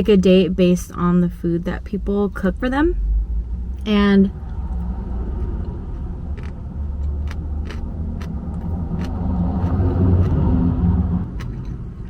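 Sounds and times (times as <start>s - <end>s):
car passing by: 3.0s - 12.0s.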